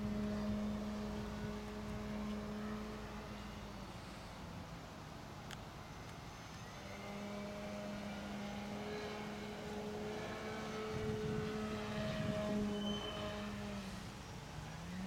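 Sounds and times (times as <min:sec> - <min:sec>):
model plane engine droning: 0:00.0 - 0:15.0.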